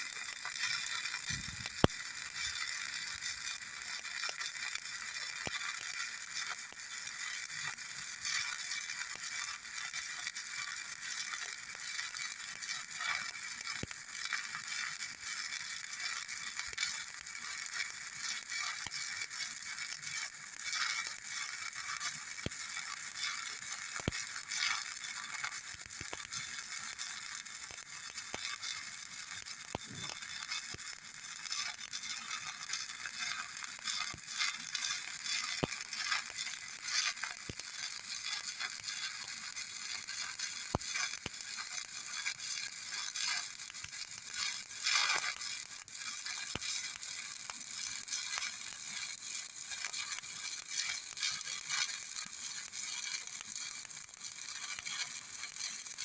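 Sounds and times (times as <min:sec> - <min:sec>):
welding arc crackling and sizzling: 0:00.0 - 0:56.0
welding spatter pops: 0:00.0 - 0:56.0.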